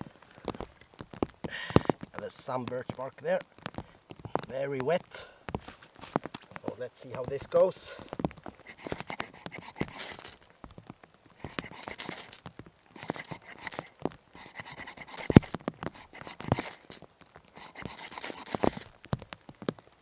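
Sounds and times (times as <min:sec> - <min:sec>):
bark and tinder scraping: 0:05.9 - 0:10.5, 0:11.4 - 0:18.9.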